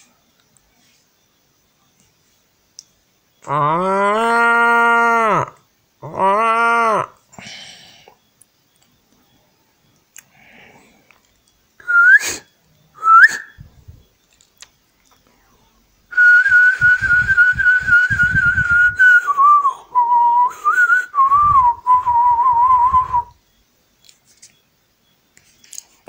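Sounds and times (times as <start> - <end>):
person whistling: 11.8 - 13.6, 16.1 - 23.4.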